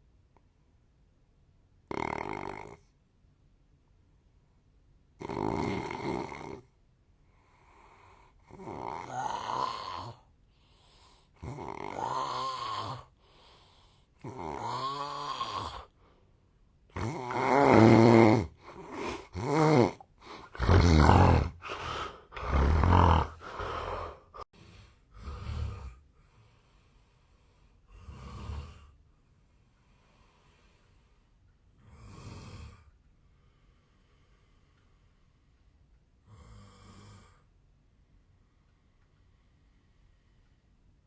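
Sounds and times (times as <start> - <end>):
man snoring loudly: 1.9 - 2.8, 5.2 - 6.7, 8.5 - 10.2, 11.4 - 13.1, 14.2 - 15.9, 16.9 - 24.4, 25.2 - 26.0, 28.0 - 28.9, 31.8 - 32.8, 36.3 - 37.4.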